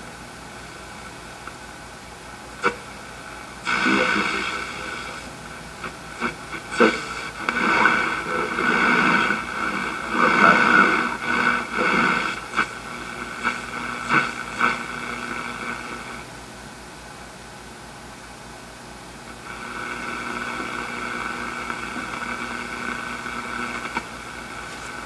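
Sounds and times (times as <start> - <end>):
radio static and hiss: 0.0 - 16.4, 19.2 - 25.0
garbled radio signal: 2.6 - 16.2, 19.3 - 25.0.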